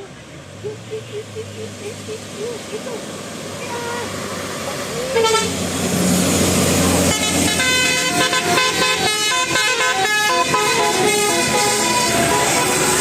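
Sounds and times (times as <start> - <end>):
low engine rumble: 0.0 - 13.0
bus multi-tone horn tune: 3.6 - 4.2, 5.0 - 5.8, 6.9 - 13.0.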